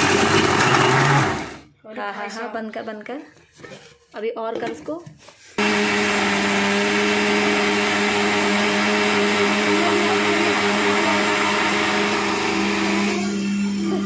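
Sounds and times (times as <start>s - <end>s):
mixer grinder motor hum: 0.0s - 1.6s, 5.6s - 14.0s.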